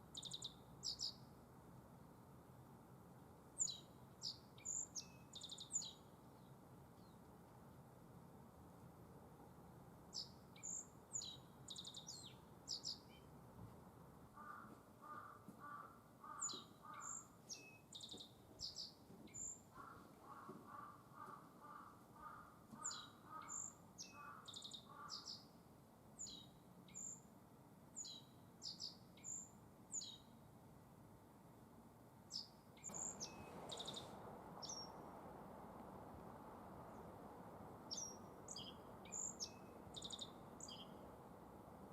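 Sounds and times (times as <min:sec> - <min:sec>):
bunting singing chirping phrases: 0:22.8 - 0:25.5, 0:32.4 - 0:35.2, 0:37.8 - 0:41.0
bird's low repeated calls: 0:32.9 - 0:35.0.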